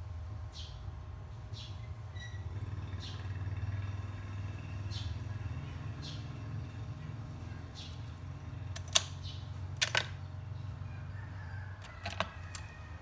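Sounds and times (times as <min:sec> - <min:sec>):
small tools clicking: 0:08.7 - 0:09.2, 0:09.8 - 0:10.2, 0:11.8 - 0:12.8.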